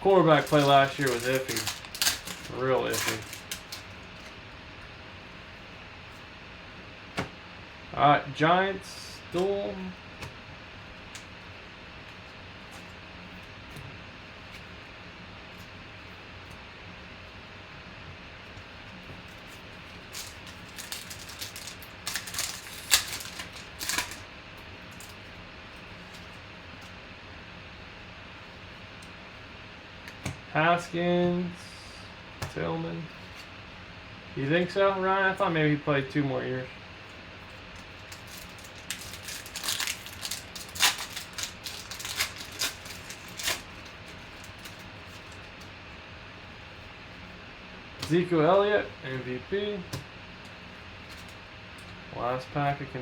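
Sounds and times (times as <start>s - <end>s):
foil card wrappers crackling: 0.0s - 4.5s, 18.5s - 27.0s, 37.4s - 45.8s.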